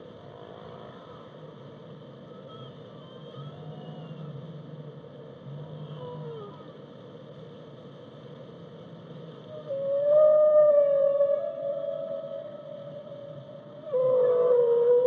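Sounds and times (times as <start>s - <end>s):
low rumble and hiss: 0.0s - 15.0s
whale song: 2.2s - 4.5s, 9.4s - 15.0s.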